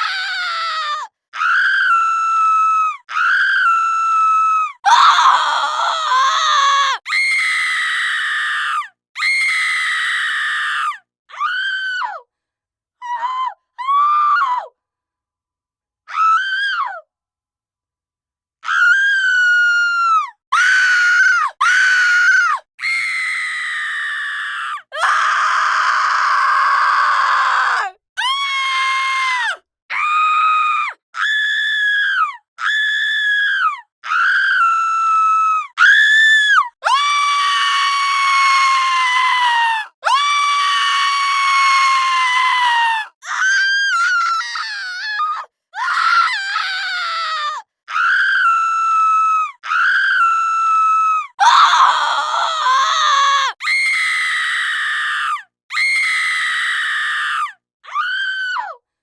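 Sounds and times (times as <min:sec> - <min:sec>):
woman screaming: 0:04.9 - 0:08.1, 0:36.9 - 0:55.1.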